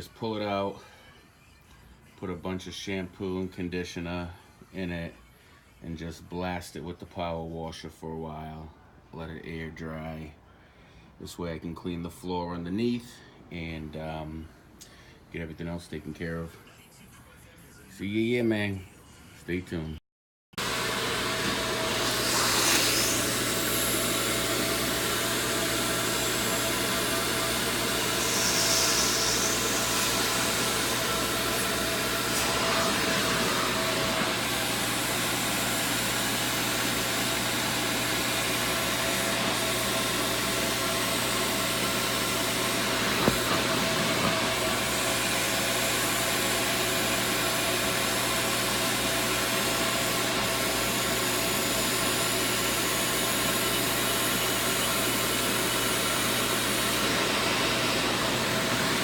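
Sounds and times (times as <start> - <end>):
power washer running: 20.6 - 59.0.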